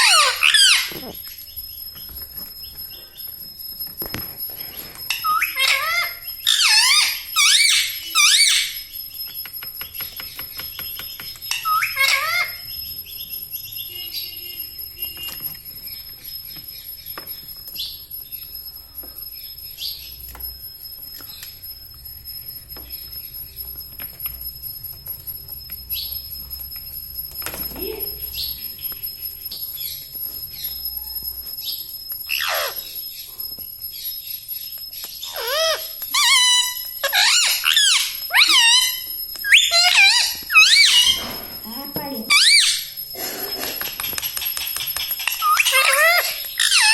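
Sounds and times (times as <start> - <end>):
parrot squawking: 0.0 - 1.4, 5.1 - 8.8, 11.5 - 12.7, 32.3 - 32.9, 35.2 - 41.3, 42.3 - 43.0, 44.2 - 46.9
parrot chirps and clicks: 0.0 - 2.7, 3.8 - 12.8, 19.7 - 22.1, 22.7 - 33.3, 34.0 - 41.2, 42.3 - 43.0, 43.6 - 46.9.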